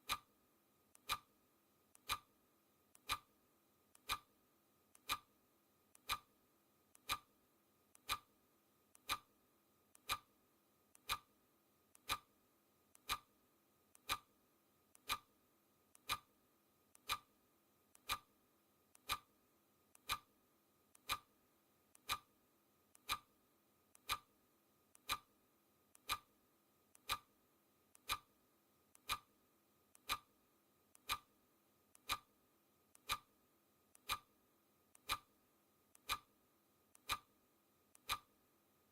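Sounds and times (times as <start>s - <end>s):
clock ticking: 0.0s - 0.3s, 0.9s - 1.3s, 1.9s - 2.3s, 2.9s - 3.3s, 3.9s - 4.3s, 4.9s - 5.3s, 5.9s - 6.3s, 6.9s - 7.3s, 7.9s - 8.3s, 9.0s - 9.3s, 9.9s - 10.3s, 10.9s - 11.3s, 12.0s - 12.3s, 12.9s - 13.3s, 13.9s - 14.3s, 14.9s - 15.3s, 16.0s - 16.3s, 17.0s - 17.3s, 17.9s - 18.3s, 18.9s - 19.3s, 20.0s - 20.3s, 20.9s - 21.3s, 21.9s - 22.3s, 22.9s - 23.3s, 23.9s - 24.3s, 25.0s - 25.3s, 25.9s - 26.3s, 26.9s - 29.3s, 29.9s - 30.3s, 30.9s - 31.3s, 31.9s - 32.3s, 32.9s - 33.3s, 33.9s - 34.3s, 34.9s - 35.3s, 35.9s - 36.3s, 36.9s - 37.3s, 37.9s - 38.3s.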